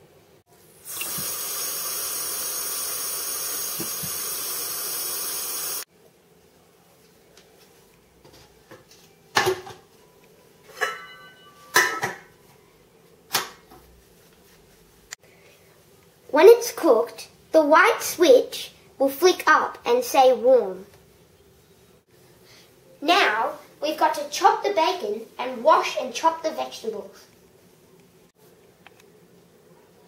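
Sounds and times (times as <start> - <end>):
water running into pot: 0.8 - 5.8.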